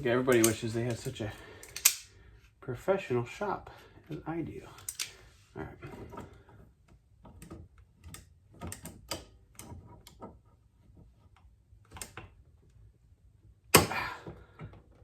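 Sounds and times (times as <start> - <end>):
hand tools clicking and tapping: 0.3 - 2.1, 4.8 - 5.2.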